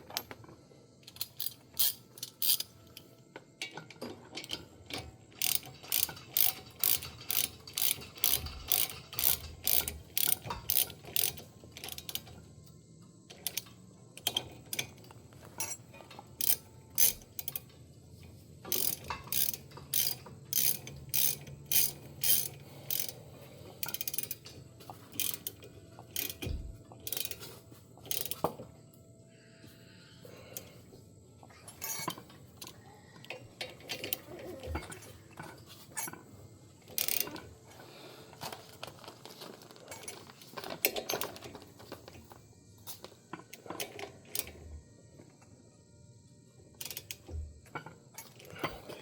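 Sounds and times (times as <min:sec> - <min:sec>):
ratchet wrench clicking: 0:01.0 - 0:03.1, 0:04.4 - 0:12.4, 0:13.3 - 0:15.0, 0:16.4 - 0:17.7, 0:18.7 - 0:23.2, 0:23.8 - 0:27.5, 0:28.1 - 0:28.5, 0:36.9 - 0:37.4, 0:46.8 - 0:47.3.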